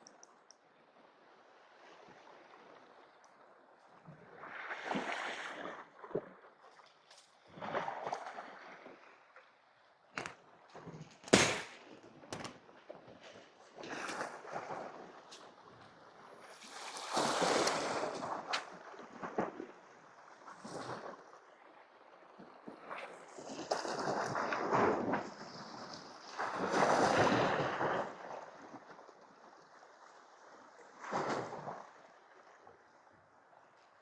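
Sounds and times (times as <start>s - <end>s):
sharp knocks: 11.2s - 12.6s.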